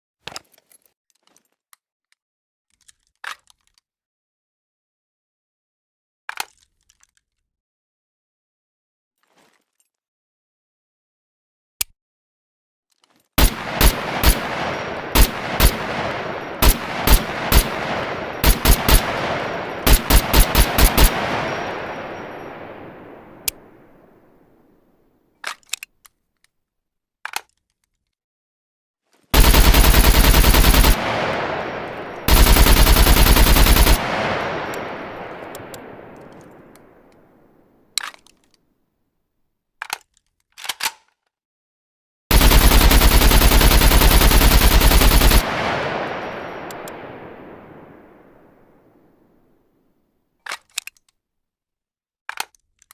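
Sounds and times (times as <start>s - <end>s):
automatic gunfire bursts: 13.4s - 24.0s, 29.3s - 36.8s, 42.3s - 48.5s
rifle gunshots echoing: 13.4s - 24.5s, 29.4s - 37.3s, 42.3s - 49.1s.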